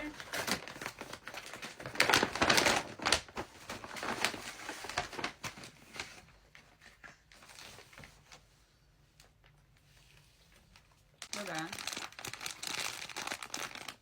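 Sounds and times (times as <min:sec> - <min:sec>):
packaging crinkling and rustling: 0:00.0 - 0:08.5, 0:09.1 - 0:14.0.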